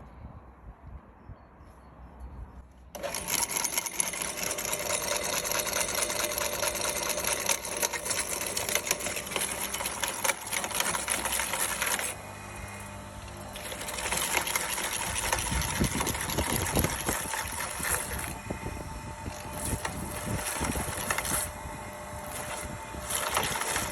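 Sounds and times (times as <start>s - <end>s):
crackling of grinding cucumbers: 3.0s - 23.9s
electric meat grinder motor: 3.0s - 23.9s.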